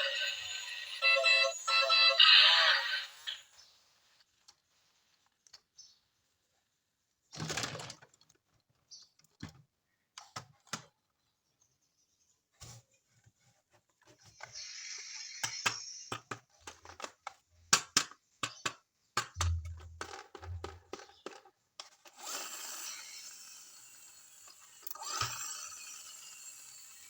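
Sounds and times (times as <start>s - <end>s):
plastic toys clicking and tapping: 7.4s - 11.1s, 15.4s - 22.5s.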